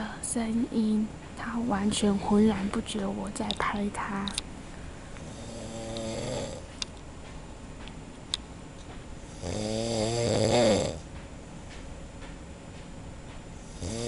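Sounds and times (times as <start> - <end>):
quiet breathing: 4.0 - 6.8
man snoring in next room: 5.2 - 6.7, 9.2 - 11.1, 13.6 - 14.0.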